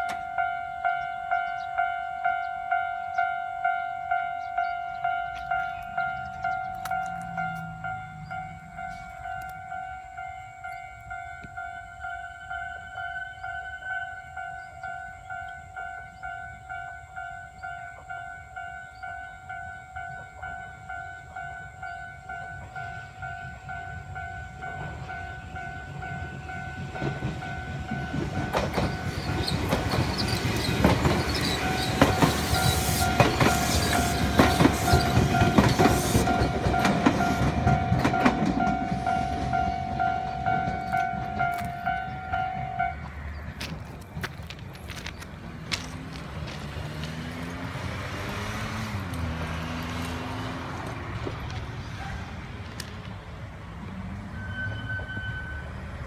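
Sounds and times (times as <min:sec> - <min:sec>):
two-tone level crossing bell: 0:00.0 - 0:29.2, 0:31.5 - 0:43.2
train wheels clacking over rail joints: 0:24.6 - 0:53.3.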